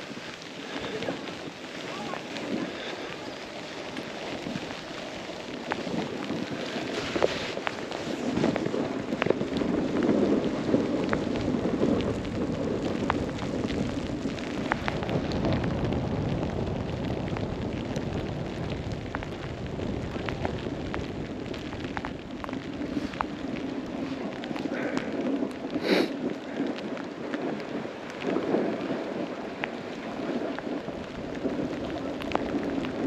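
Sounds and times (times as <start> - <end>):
snowboard carving over snow: 0.0 - 33.0
wind on microphone: 0.0 - 33.0.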